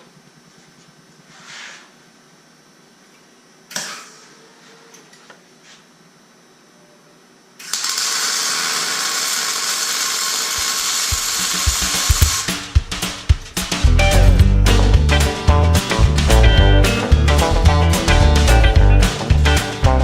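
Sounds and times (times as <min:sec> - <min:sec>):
welding arc crackling: 0:07.6 - 0:13.2
music with drum beat: 0:11.1 - 0:20.0.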